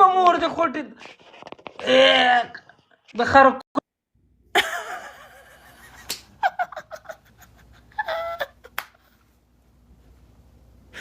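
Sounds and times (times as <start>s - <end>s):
person laughing: 4.6s - 9.2s
sharp slaps or clicks: 6.0s - 6.3s, 8.8s - 9.0s.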